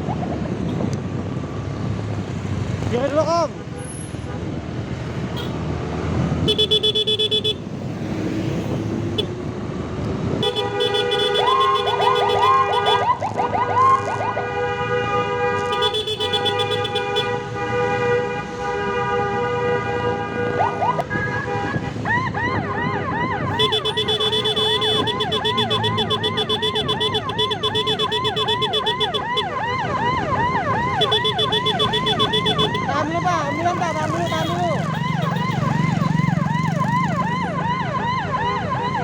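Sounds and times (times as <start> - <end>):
road traffic: 0.0 - 39.0
electronic siren wailing: 20.6 - 39.0.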